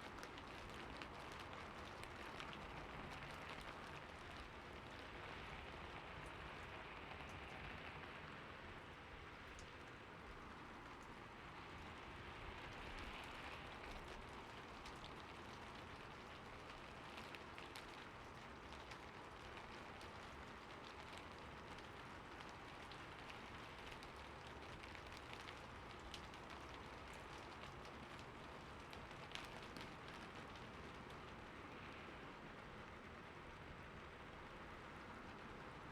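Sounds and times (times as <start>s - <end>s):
soft rain falling: 0.0s - 35.9s
raindrops ticking: 12.7s - 32.0s.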